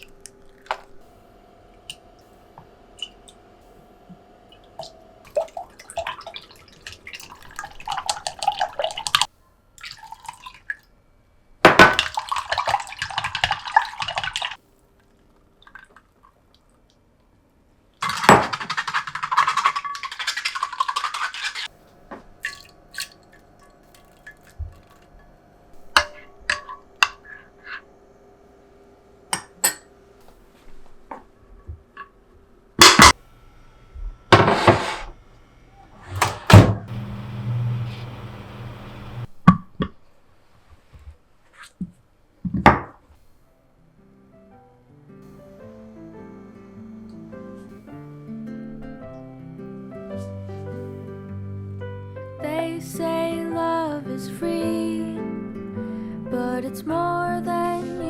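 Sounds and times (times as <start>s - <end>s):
tap water running: 4.1s - 10.8s, 11.7s - 14.6s, 18.0s - 25.3s, 36.2s - 39.3s
water splashing: 4.5s - 10.8s, 12.0s - 14.6s, 18.0s - 21.7s.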